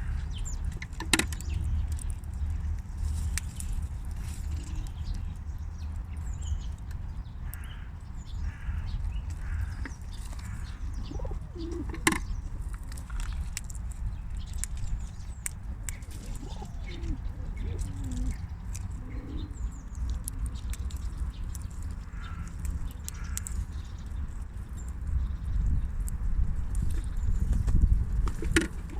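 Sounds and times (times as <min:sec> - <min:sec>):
baby squirrel sneezing: 0:16.2 - 0:18.4.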